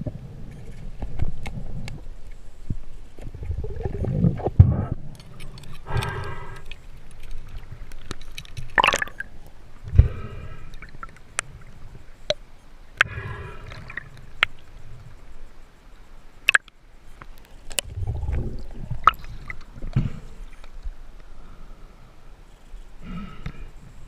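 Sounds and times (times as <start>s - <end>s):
water gurgling in river rapid: 8.8s - 11.2s.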